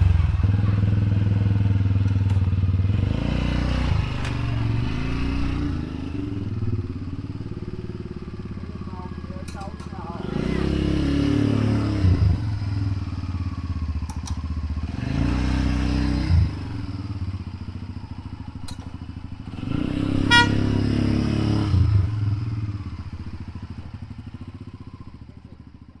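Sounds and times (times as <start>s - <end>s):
small engine revving: 0.0s - 18.8s, 19.4s - 25.5s
horn beep: 20.2s - 20.9s.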